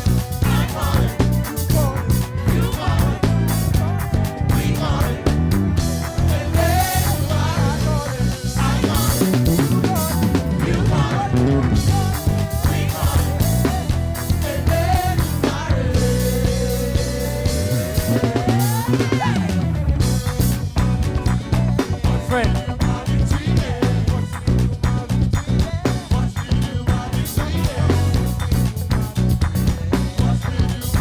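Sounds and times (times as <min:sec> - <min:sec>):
praise band playing: 0:00.0 - 0:31.0.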